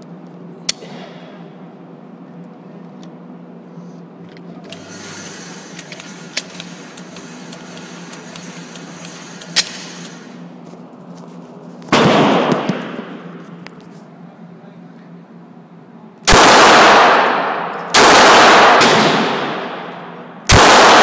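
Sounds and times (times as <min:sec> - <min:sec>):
steady low hum: 0:00.0 - 0:21.0
sharp clicks: 0:05.7 - 0:10.2
pistol shot with reverb: 0:12.0 - 0:13.2, 0:16.3 - 0:19.8, 0:20.5 - 0:21.0
sharp crack: 0:20.5 - 0:21.0.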